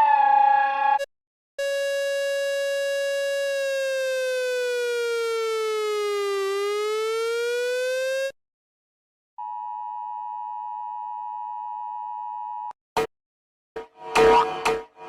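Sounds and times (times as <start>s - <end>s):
electronic alert siren: 0.8s - 8.4s, 14.0s - 14.8s.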